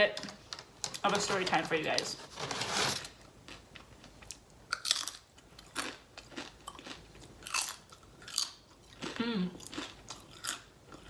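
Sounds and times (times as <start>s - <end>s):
chips crunching: 0.0s - 11.0s
chewing: 3.5s - 11.0s.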